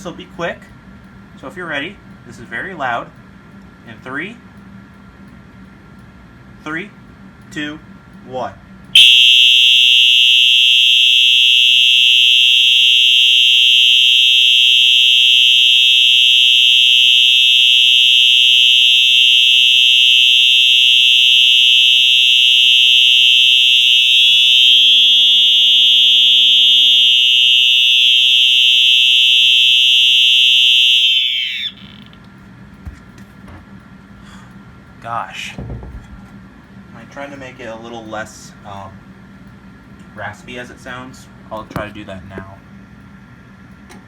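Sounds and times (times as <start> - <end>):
fire alarm horn high-pitched tone: 9.0 - 32.0.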